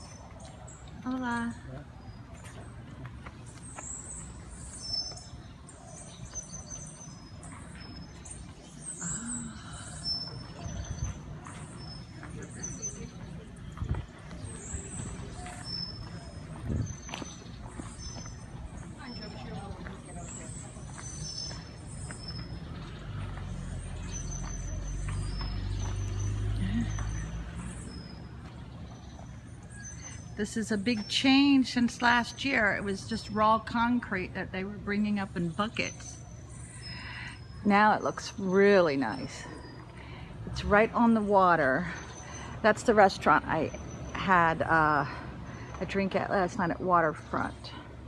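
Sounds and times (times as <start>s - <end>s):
birds chirping: 0.0s - 48.0s.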